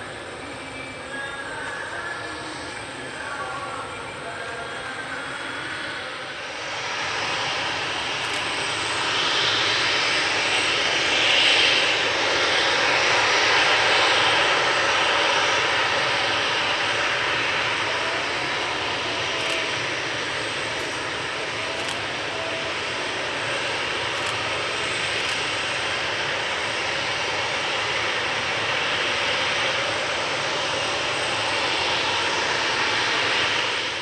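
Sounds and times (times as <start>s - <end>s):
jet engines running: 0.0s - 34.0s.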